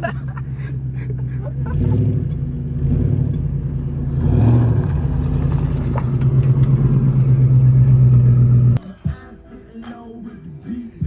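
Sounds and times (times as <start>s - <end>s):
car engine droning: 0.0s - 8.8s
music: 8.8s - 11.0s.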